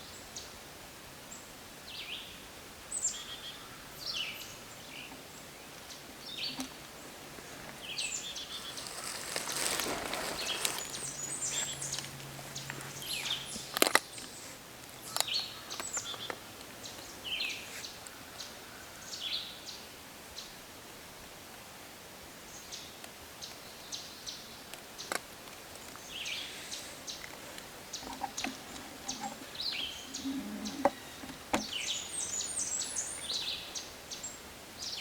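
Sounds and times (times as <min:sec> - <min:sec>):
songbirds chirping and singing: 0:02.9 - 0:19.6, 0:25.8 - 0:35.0
rustling: 0:06.5 - 0:15.3, 0:25.5 - 0:33.3.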